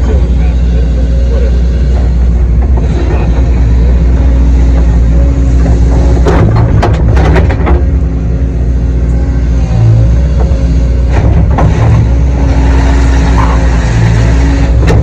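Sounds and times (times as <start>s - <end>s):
diesel engine running: 0.0s - 15.0s
sharp knocks and scraping: 1.7s - 8.4s, 9.8s - 15.0s.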